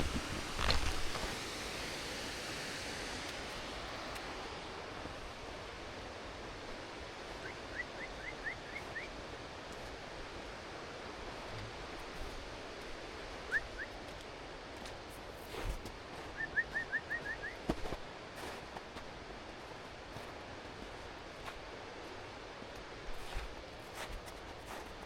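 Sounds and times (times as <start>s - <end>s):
stream rushing: 0.0s - 25.0s
bird calling: 7.4s - 9.1s, 13.5s - 14.0s, 16.3s - 17.8s.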